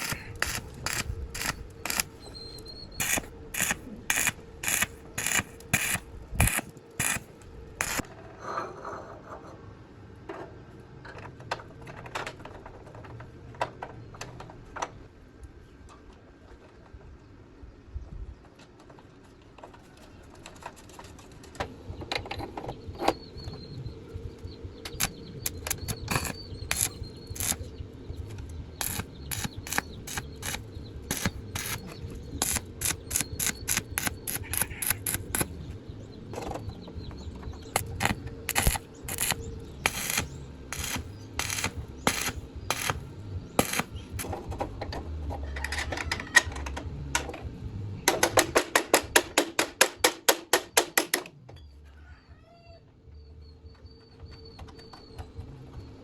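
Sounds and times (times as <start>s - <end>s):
taps and clicks on metal parts: 0.0s - 2.2s, 3.0s - 7.2s, 7.8s - 8.0s, 24.9s - 27.6s, 28.8s - 35.5s, 37.8s - 43.0s, 43.6s - 45.0s.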